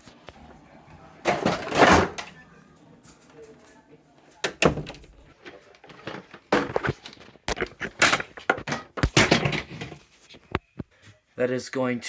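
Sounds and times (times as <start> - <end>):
knocks and clattering: 5.9 - 10.0.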